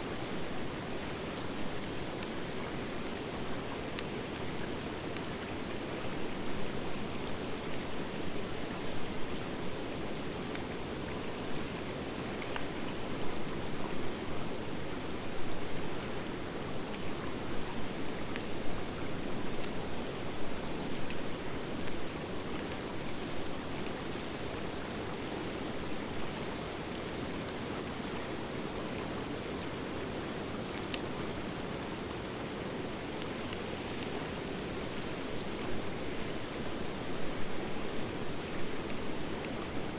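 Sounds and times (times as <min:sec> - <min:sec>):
campfire flames rushing: 0:00.0 - 0:03.4
fire crackles and pops: 0:00.0 - 0:05.4, 0:35.8 - 0:39.9.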